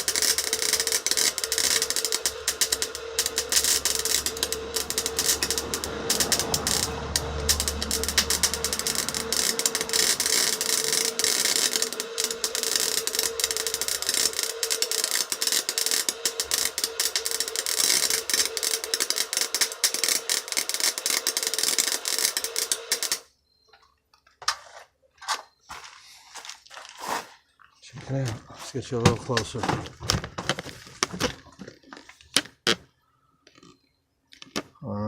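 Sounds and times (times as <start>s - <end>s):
steady welder hum: 0.0s - 23.3s
welding arc crackling: 0.0s - 23.3s.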